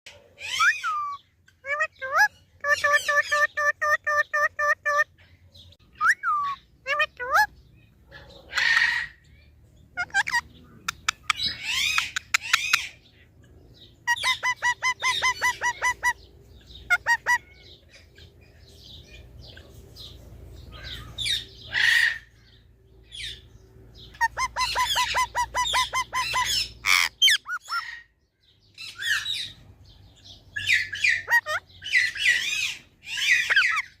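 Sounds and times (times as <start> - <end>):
parrot squawking: 0.4 - 5.1, 5.9 - 7.5, 8.2 - 9.2, 10.0 - 13.0, 14.0 - 17.8, 20.7 - 22.5, 24.1 - 28.2, 30.6 - 34.0
parrot repeated pitched notes: 6.0 - 7.5.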